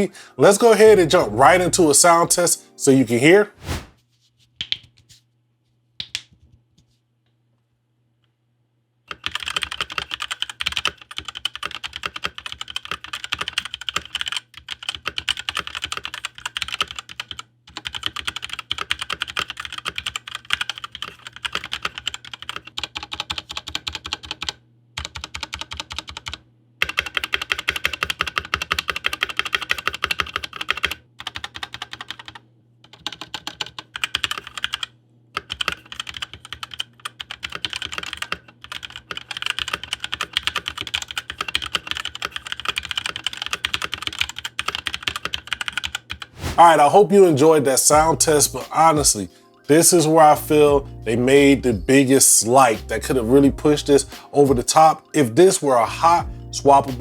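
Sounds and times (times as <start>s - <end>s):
mechanical keyboard typing: 9.1s - 46.3s.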